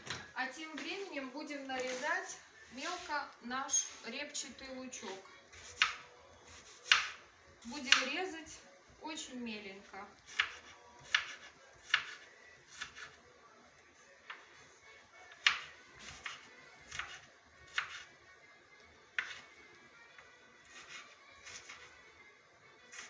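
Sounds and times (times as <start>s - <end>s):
knife chopping on cutting board: 5.5s - 8.1s, 10.2s - 13.2s, 15.3s - 18.1s, 19.2s - 19.5s, 20.6s - 21.9s.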